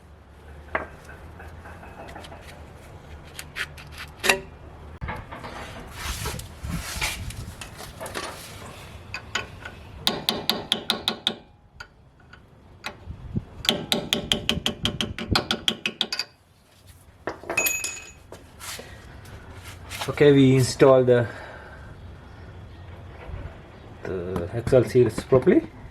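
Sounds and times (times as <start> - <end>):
hammer tapping metal: 10.1 - 11.5.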